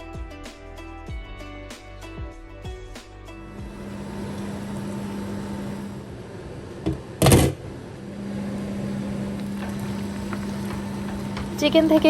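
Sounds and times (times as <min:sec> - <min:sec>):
chicken sizzling in pot: 0:03.5 - 0:06.0, 0:08.2 - 0:12.0.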